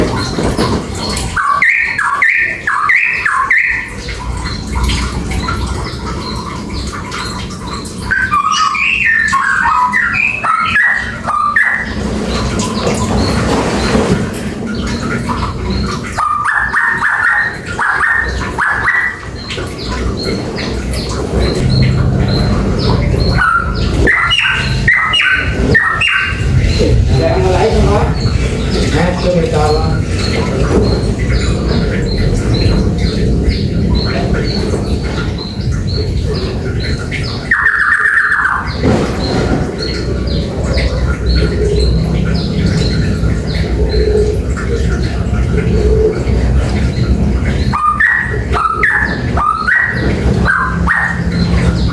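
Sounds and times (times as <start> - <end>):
bird calling: 0.0 - 51.9
bird singing whistled notes: 8.1 - 11.9, 21.5 - 26.9
low rumble: 21.2 - 36.6.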